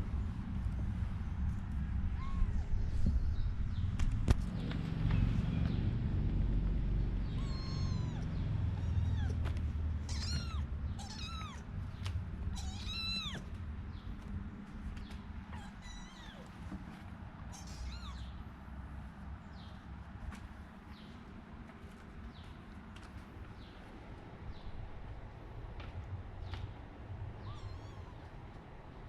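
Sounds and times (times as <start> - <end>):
low rumble: 0.0 - 15.2
kittens mewing: 7.2 - 11.7, 12.5 - 13.5, 15.4 - 16.5, 17.5 - 18.4, 27.4 - 28.4.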